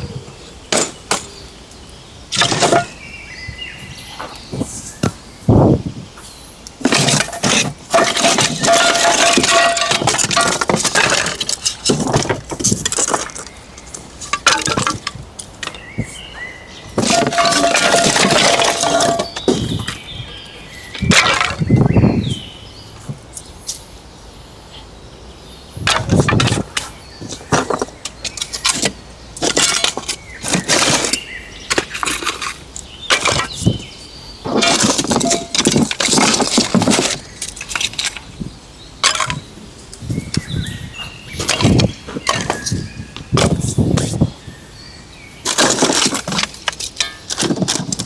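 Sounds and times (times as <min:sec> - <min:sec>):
handling knocks and clinks: 0:02.3 - 0:03.0, 0:06.8 - 0:22.4, 0:25.9 - 0:38.4, 0:39.0 - 0:39.5, 0:41.3 - 0:44.2, 0:45.5 - 0:48.0
rustling: 0:06.8 - 0:22.4.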